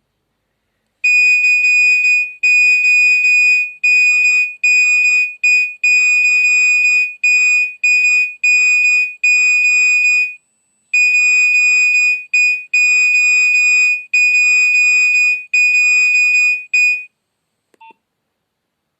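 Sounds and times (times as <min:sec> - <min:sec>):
phone ringtone high beeps: 0:01.1 - 0:10.4.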